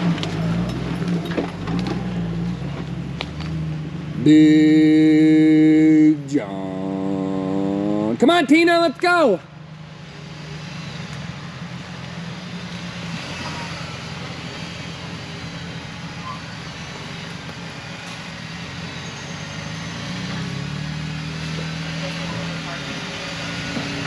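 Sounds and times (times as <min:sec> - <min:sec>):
off-road vehicle engine running: 0:00.0 - 0:24.0
road and tyre noise: 0:00.0 - 0:24.0.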